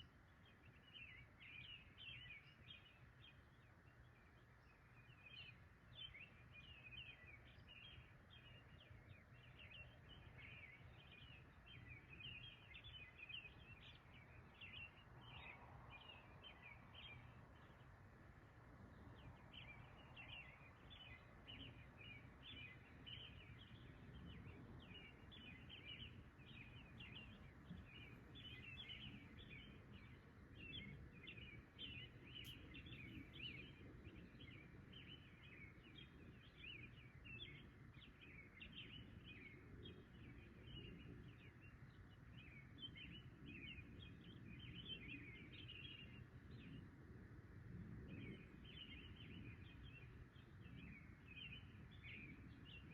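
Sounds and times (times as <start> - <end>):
high chirps of night chorus: 19.3 - 39.2.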